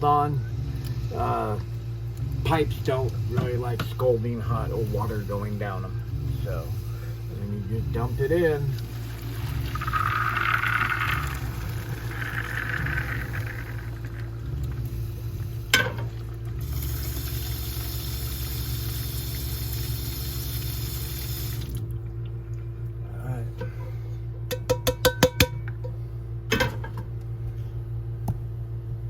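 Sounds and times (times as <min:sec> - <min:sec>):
tap water running: 0:00.7 - 0:22.0
water splashing into a sink: 0:08.5 - 0:22.0.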